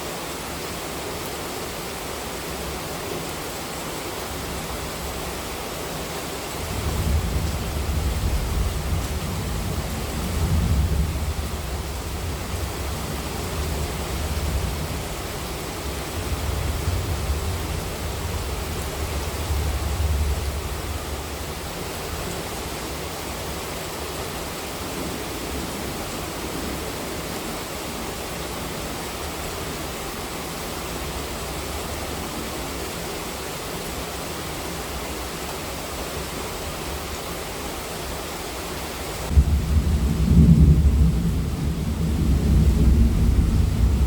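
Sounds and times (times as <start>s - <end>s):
heavy rain: 0.0s - 44.0s
low rumble of thunder: 6.6s - 22.2s, 39.3s - 44.0s.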